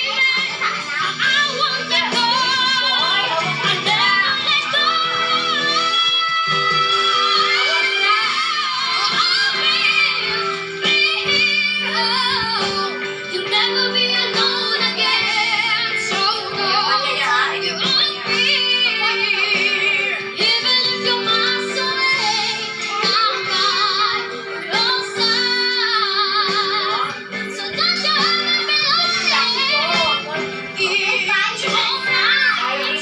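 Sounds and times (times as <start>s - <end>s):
pop backing music: 0.0s - 33.0s
woman singing with vibrato: 11.5s - 33.0s.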